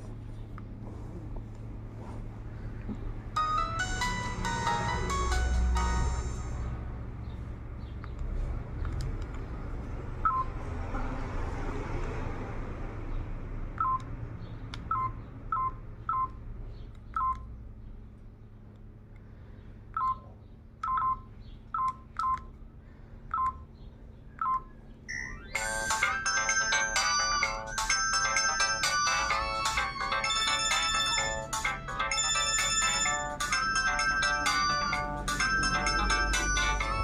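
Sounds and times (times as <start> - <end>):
phone keypad beeps: 13.8 - 14.1, 14.9 - 16.4, 20.0 - 20.2, 20.8 - 21.2, 21.8 - 22.5, 24.4 - 26.1.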